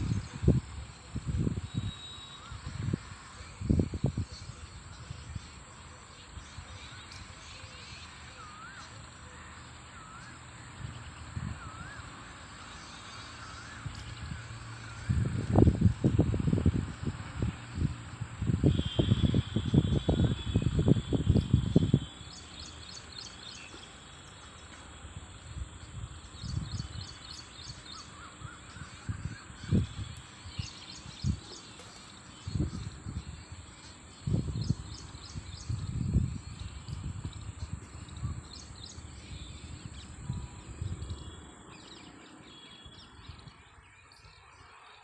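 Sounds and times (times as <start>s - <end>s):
wind buffeting microphone: 0.0s - 5.6s, 15.0s - 42.0s
small birds chirping: 15.3s - 44.5s.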